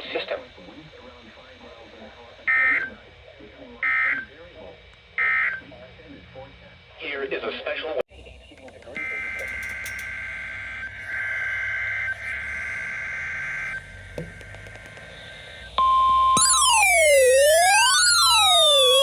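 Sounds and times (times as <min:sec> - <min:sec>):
two-tone data buzz: 0:08.9 - 0:19.0
steady alarm tone: 0:09.0 - 0:19.0
swooping siren-like electronic tones: 0:09.0 - 0:19.0.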